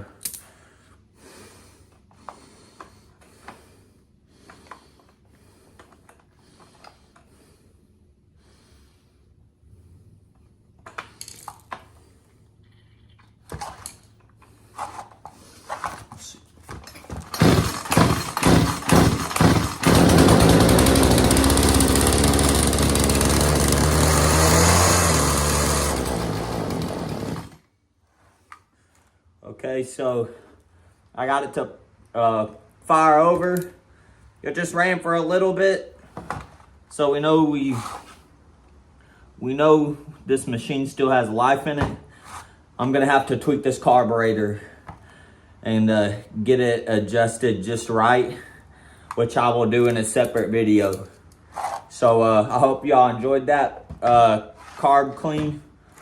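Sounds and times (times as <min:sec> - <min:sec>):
starter cord pulls: 0:16.7 - 0:27.6
chainsaw engine sputtering and running: 0:17.3 - 0:27.6.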